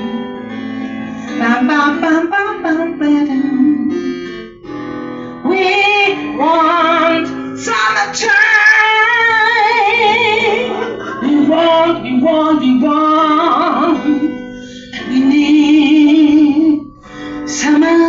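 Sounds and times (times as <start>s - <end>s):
woman singing with vibrato: 1.3s - 4.1s, 5.4s - 18.0s.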